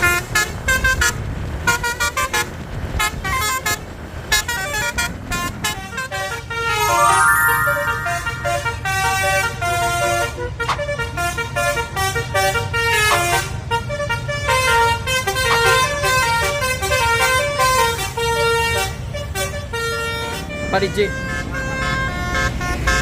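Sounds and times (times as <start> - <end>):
bus rumble: 0.0 - 6.9
multi-tone bus horn tune: 4.4 - 23.0.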